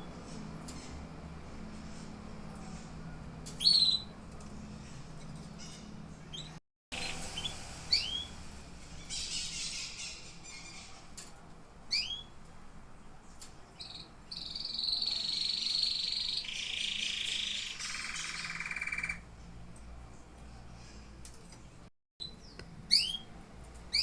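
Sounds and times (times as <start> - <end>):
canary singing: 0.0 - 11.1, 11.9 - 12.4, 13.6 - 19.3, 22.2 - 24.0.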